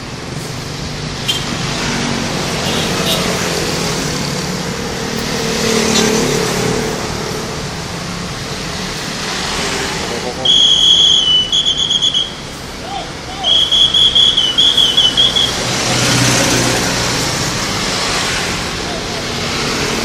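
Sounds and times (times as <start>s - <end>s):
road traffic: 0.0s - 20.0s
vehicle passing close: 0.7s - 10.4s, 15.1s - 20.0s.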